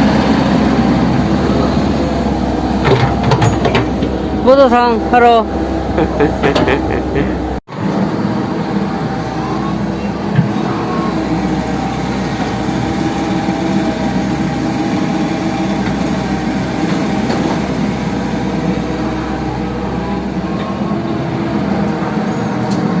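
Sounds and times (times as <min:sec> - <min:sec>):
diesel engine running steadily: 0:00.0 - 0:23.0.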